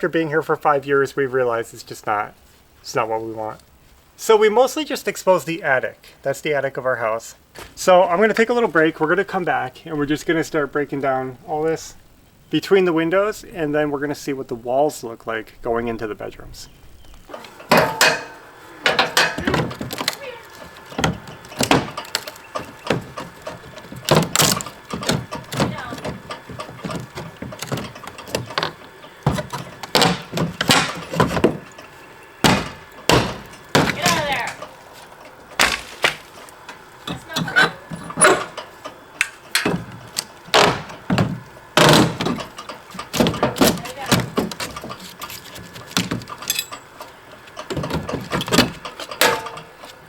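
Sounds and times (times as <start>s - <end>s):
wood siding cracking and breaking: 19.0s - 37.5s, 39.4s - 46.4s.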